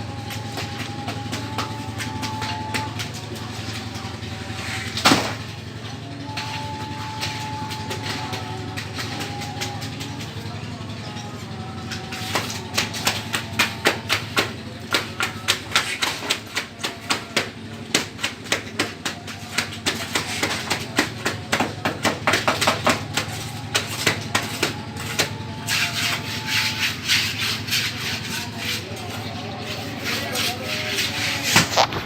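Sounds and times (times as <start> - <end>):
low engine hum: 0.0 - 32.0
scraping: 22.9 - 32.0.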